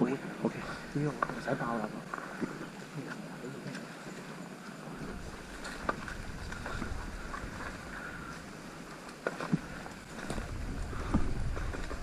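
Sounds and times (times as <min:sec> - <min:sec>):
wind buffeting microphone: 0:04.8 - 0:12.0.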